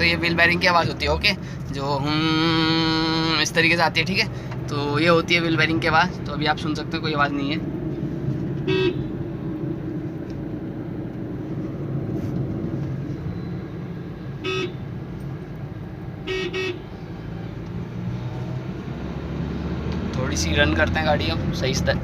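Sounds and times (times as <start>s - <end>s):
car engine and road noise: 0.0s - 22.0s
short car horn toots: 8.6s - 9.1s, 16.2s - 16.8s.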